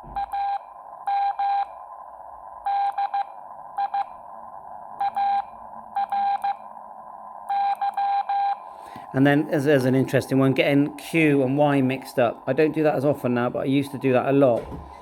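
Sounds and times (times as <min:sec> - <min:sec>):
morse code beeps: 0:00.1 - 0:01.7, 0:02.7 - 0:04.1, 0:05.0 - 0:06.6, 0:07.5 - 0:08.6.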